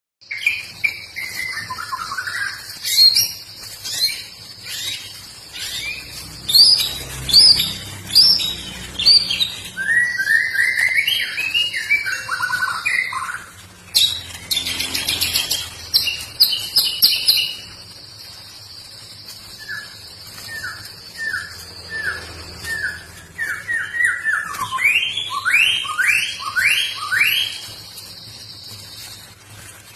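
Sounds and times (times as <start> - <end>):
bird singing whistled notes: 0.2 - 17.9, 18.5 - 29.2.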